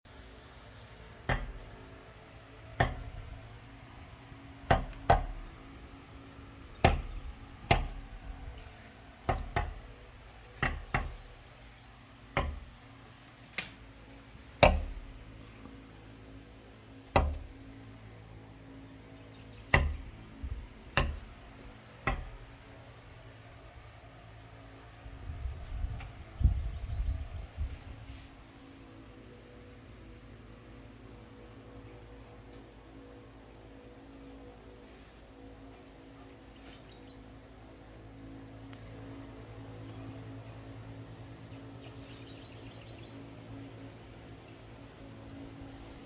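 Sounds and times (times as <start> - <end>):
sharp knocks: 1.2 - 1.8, 2.8 - 3.3, 4.6 - 5.5, 6.8 - 8.1, 9.2 - 9.9, 10.5 - 11.4, 12.3 - 12.8, 14.6 - 15.2, 17.1 - 17.6, 19.7 - 20.2, 20.9 - 21.4, 22.0 - 22.6.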